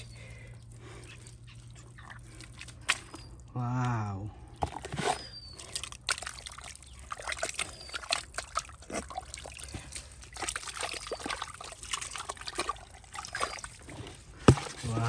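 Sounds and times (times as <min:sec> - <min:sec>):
mud and water sloshing: 0:00.0 - 0:15.0
mud splats and squelches: 0:05.6 - 0:15.0.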